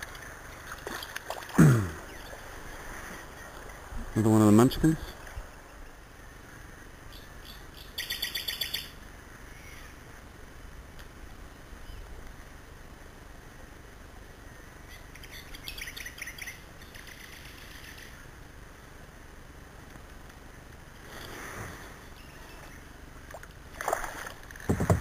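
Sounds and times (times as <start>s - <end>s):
faint steady hiss: 0.0s - 25.0s
bird chirping: 7.1s - 9.0s, 14.9s - 18.2s.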